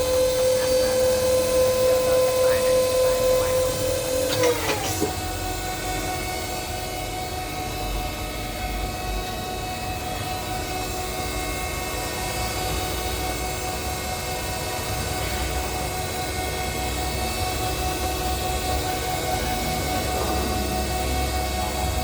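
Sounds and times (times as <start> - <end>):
lathe machine hum: 0.0 - 22.0.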